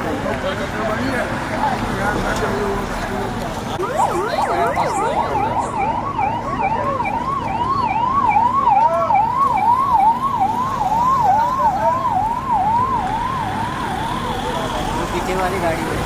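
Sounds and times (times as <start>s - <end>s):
siren yelping: 3.8s - 14.2s.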